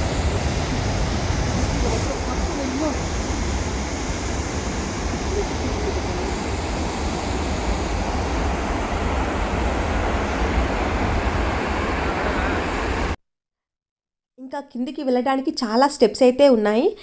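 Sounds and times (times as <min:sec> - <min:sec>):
waterfall rushing: 0:00.0 - 0:13.2
wind rumbling on microphone: 0:00.0 - 0:13.2.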